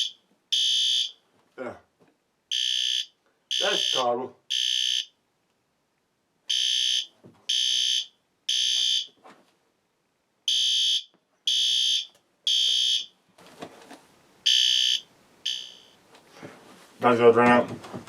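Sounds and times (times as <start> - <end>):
fire alarm horn blasts: 0.0 - 1.1, 2.5 - 5.1, 6.5 - 9.1, 10.5 - 13.1, 14.5 - 16.0.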